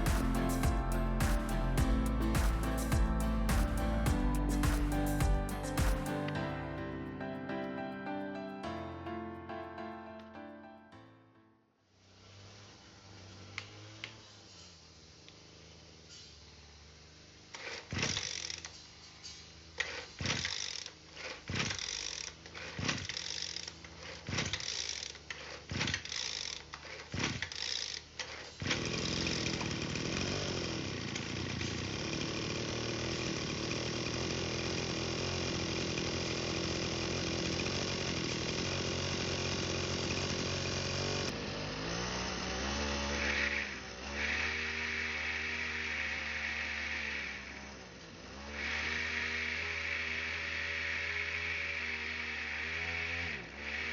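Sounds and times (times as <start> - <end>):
small two-stroke engine running: 0.0 - 3.2, 12.0 - 53.9
recoil starter pulls: 17.5 - 41.3.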